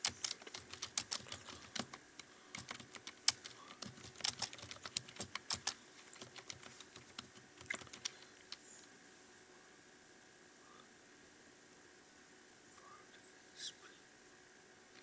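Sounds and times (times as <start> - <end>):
computer keyboard typing: 0.0 - 8.6.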